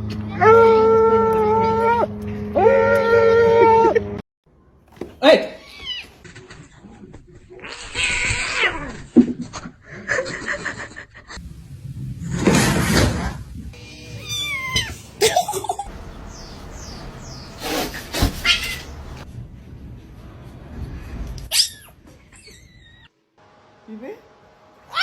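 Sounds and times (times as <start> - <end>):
cats meowing and yowling: 0.3 - 4.0, 7.6 - 9.0, 13.8 - 15.1, 18.3 - 18.9.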